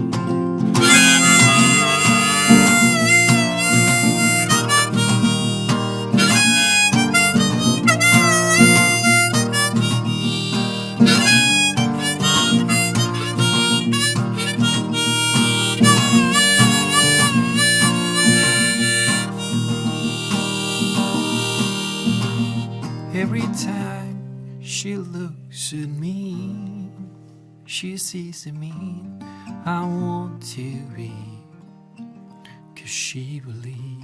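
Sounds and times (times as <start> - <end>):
strummed acoustic guitar: 0.0 - 27.8, 28.6 - 34.0
harmonica solo: 0.8 - 23.0.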